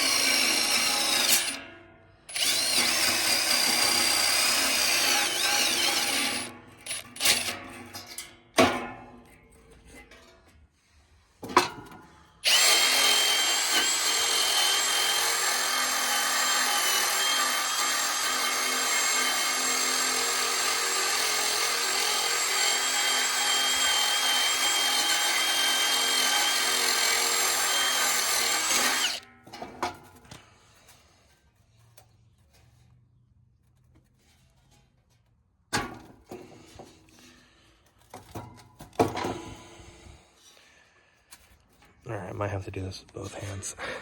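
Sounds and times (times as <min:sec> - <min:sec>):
drill with wire brush scraping: 0:00.0 - 0:01.6, 0:02.2 - 0:08.2, 0:12.2 - 0:29.3.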